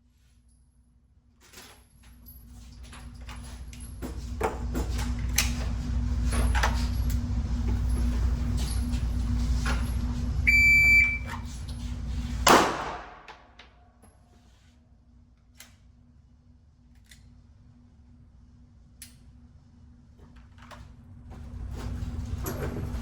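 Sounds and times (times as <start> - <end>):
low rumble with hum: 0.0 - 23.0
short electronic beep: 10.5 - 11.3.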